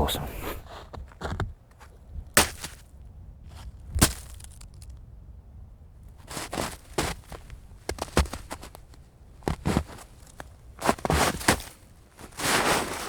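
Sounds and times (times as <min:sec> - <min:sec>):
chunks of frozen snow cracking: 0:04.0 - 0:04.9.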